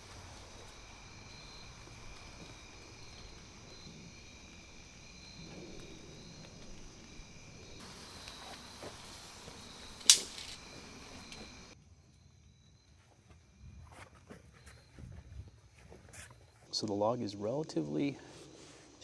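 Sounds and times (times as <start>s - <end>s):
insects chirring: 0.0s - 18.6s
faint ticks: 7.8s - 11.8s
loud sharp click: 10.0s - 10.6s.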